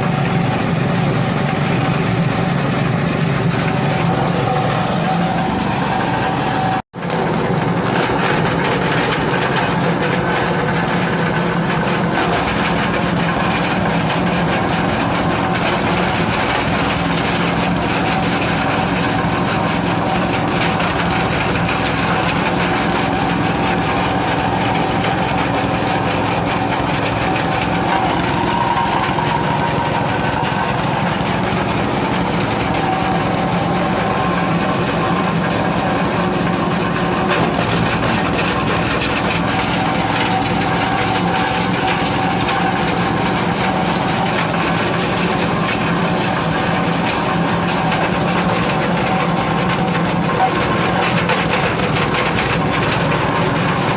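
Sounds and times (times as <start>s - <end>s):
grinding machine humming: 0.0s - 53.9s.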